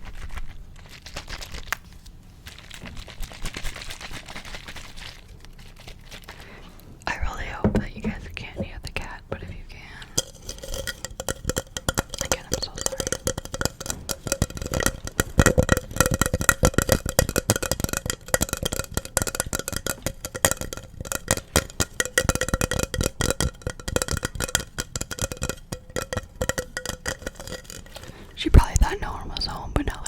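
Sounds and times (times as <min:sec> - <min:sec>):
fast tapping on hard object: 0:07.1 - 0:28.9.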